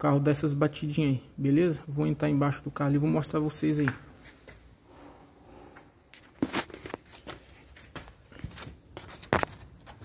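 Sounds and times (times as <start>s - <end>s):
rustling and scraping handling: 2.9s - 10.0s.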